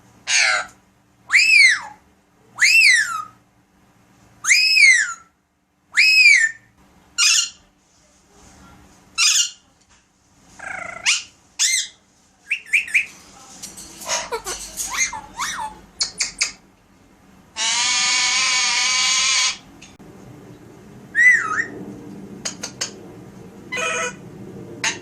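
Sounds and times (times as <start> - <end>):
parakeet squawks: 0.3 - 0.7, 7.2 - 7.6, 9.2 - 9.6, 14.0 - 16.6, 17.6 - 19.6, 23.7 - 24.2
parakeet chirps: 14.1 - 16.6
parakeet whistling: 21.2 - 21.7.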